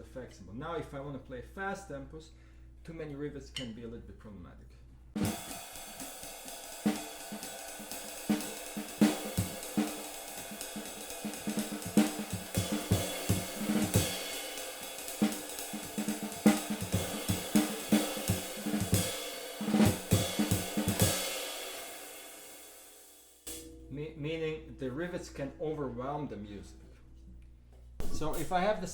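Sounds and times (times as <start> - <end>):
drum kit at fast swing tempo: 5.2 - 23.7, 28.0 - 28.9.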